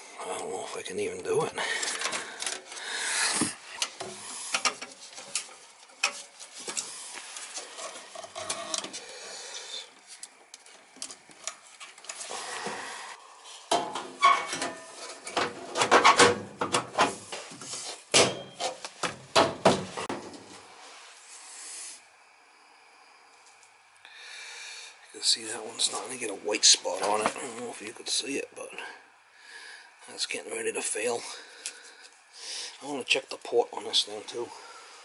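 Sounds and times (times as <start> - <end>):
hand tools rubbing and scraping: 1.9 - 10.3.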